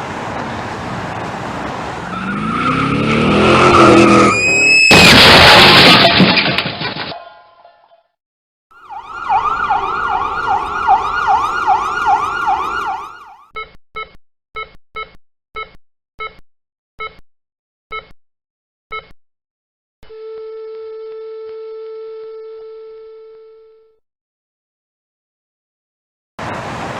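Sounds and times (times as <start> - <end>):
car crash sound effect: 3.6 - 7.3
warbling electronic siren: 8.8 - 13.5.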